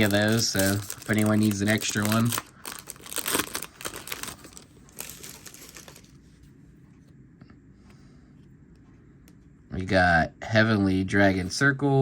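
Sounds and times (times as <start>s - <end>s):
foil wrapper crinkling and tearing: 0.0s - 6.2s.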